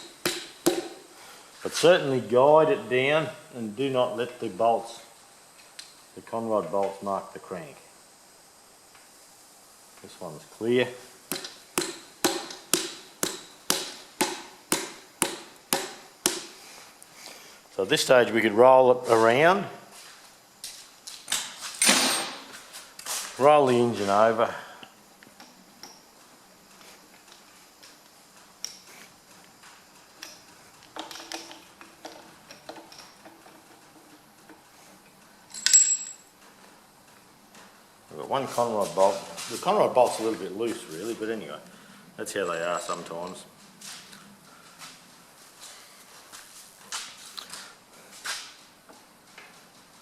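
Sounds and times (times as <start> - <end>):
loud ringing metal clink: 35.5 - 36.3
small metal parts clinking: 35.5 - 36.3.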